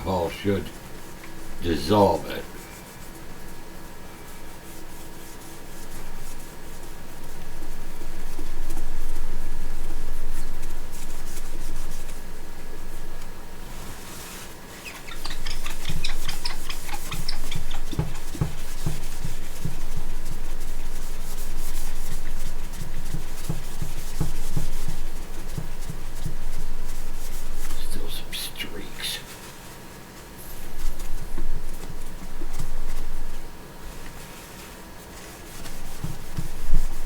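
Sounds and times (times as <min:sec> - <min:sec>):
towel scrubbing a screen: 0:04.4 - 0:12.2, 0:13.6 - 0:28.3, 0:29.2 - 0:37.0.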